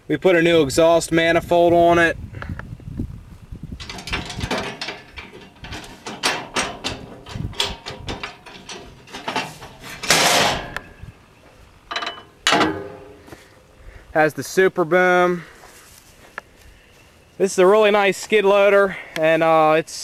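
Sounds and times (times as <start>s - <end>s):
mechanical clicks and clunks: 3.8s - 11.0s, 11.9s - 13.4s.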